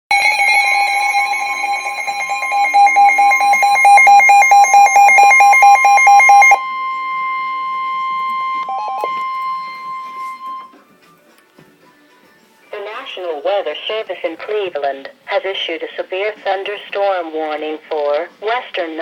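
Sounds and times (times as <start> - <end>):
pulsing electronic alarm beep: 0.1 - 10.8
short beeps: 0.1 - 10.8
steady warning tone: 0.1 - 10.8.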